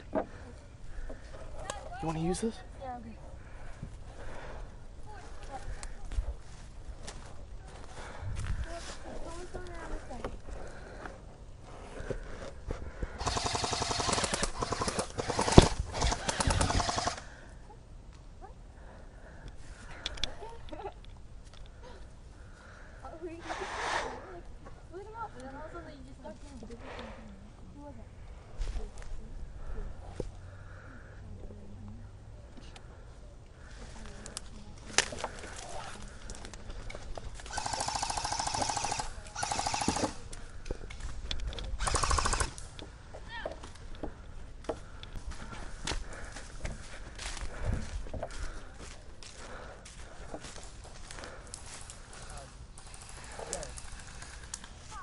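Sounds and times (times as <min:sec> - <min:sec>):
airsoft guns firing full auto: 0:13.2 - 0:17.3, 0:37.5 - 0:40.2, 0:41.8 - 0:42.6.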